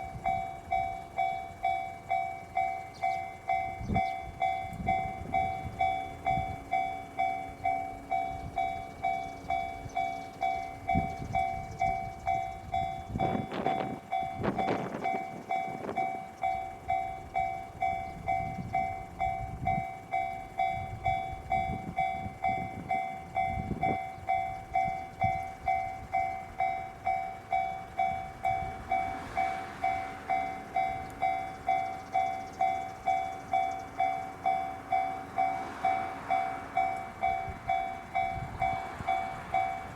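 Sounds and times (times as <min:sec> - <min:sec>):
electric train passing: 0:00.0 - 0:39.9
level crossing warning bell: 0:00.0 - 0:39.9
wheel-on-rail noise: 0:00.0 - 0:39.9.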